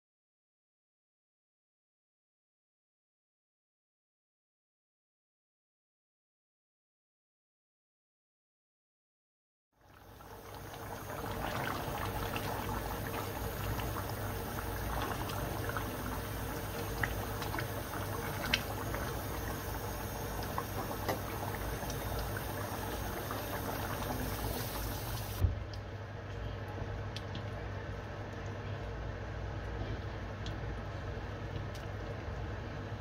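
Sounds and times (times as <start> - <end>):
liquid bubbling in a pot: 9.8 - 33.0.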